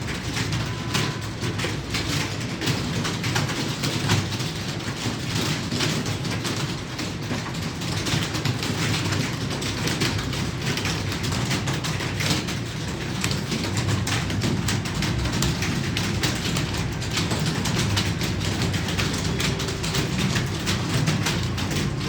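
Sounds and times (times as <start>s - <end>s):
keyboards clattering: 0.0s - 22.0s.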